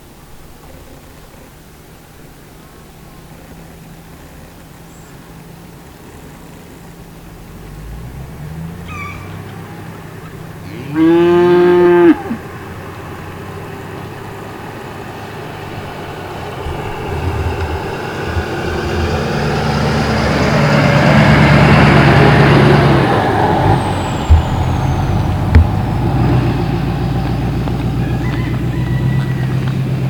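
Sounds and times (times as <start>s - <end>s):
vehicle passing by: 5.3s - 30.0s
sharp knocks: 24.3s - 26.2s.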